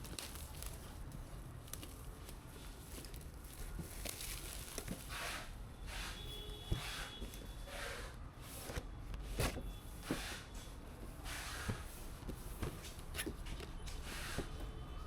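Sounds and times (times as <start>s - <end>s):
soft rustling: 0.0s - 5.6s.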